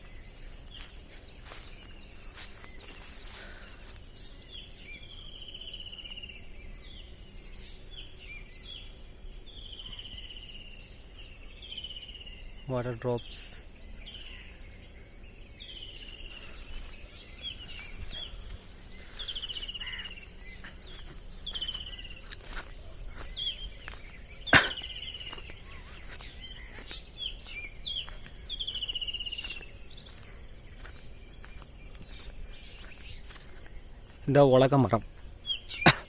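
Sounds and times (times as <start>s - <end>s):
high insect drone: 0.0s - 36.0s
songbirds trilling: 0.0s - 36.0s.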